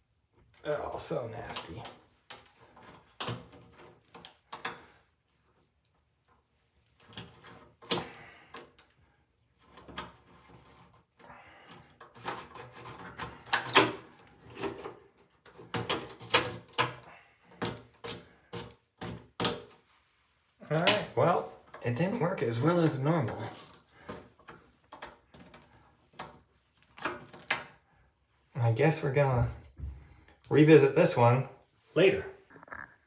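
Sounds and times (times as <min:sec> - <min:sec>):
plastic scraping a shower drain: 0:02.5 - 0:19.9, 0:20.7 - 0:28.0.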